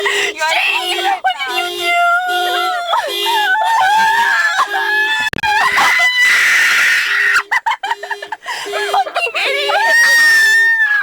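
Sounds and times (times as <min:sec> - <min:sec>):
car alarm horn honking: 0:00.0 - 0:05.8, 0:06.8 - 0:10.8
people screaming: 0:02.9 - 0:07.4, 0:09.7 - 0:11.0.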